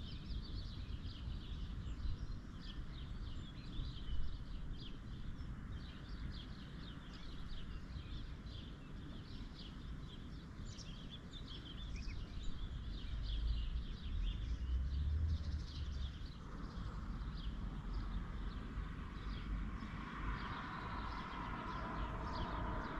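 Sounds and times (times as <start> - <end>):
low outdoor rumble: 11.4 - 22.9.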